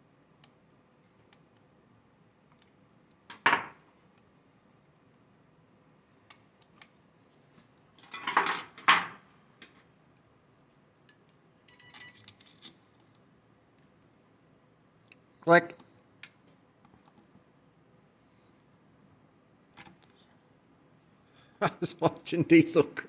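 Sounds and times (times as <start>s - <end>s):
metal tools clinking on workbench: 8.0s - 9.2s.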